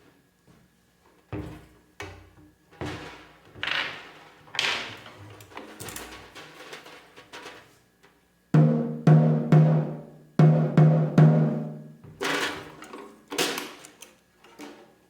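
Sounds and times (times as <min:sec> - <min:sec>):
low boomy snare drum hits: 0:08.6 - 0:11.9.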